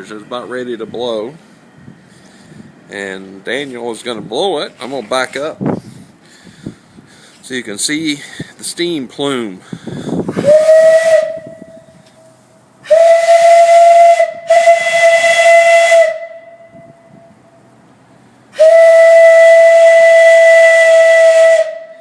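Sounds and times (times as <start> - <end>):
steam hissing: 9.9 - 16.4
steam whistle blasts: 10.3 - 17.4, 18.5 - 22.0.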